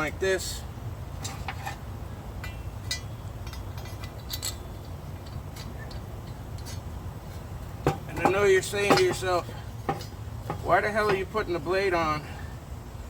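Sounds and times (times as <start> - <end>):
steady low hum: 0.0 - 13.0
light metallic clinks: 2.4 - 6.9.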